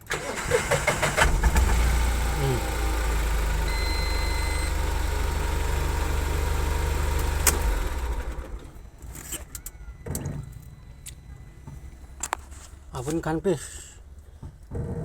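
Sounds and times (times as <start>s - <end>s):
engine shutting off: 0.0s - 9.0s
vehicle engine idling: 0.1s - 9.0s.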